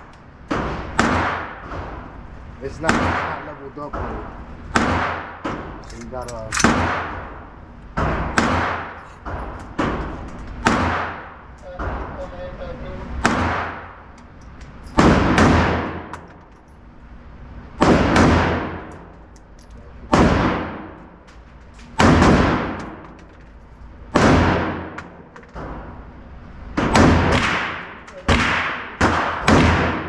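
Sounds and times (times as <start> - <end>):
rifle single shots: 26.8 - 30.0.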